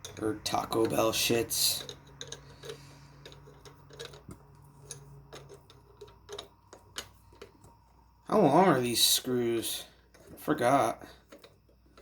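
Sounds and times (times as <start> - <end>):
metallic clicks of hand tools: 0.0 - 7.5.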